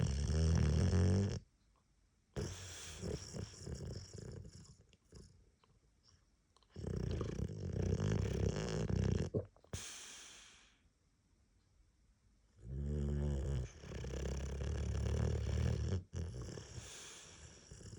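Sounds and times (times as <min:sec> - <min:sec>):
dog snoring: 0:00.0 - 0:01.4, 0:02.4 - 0:05.4, 0:06.7 - 0:10.7, 0:12.6 - 0:17.9.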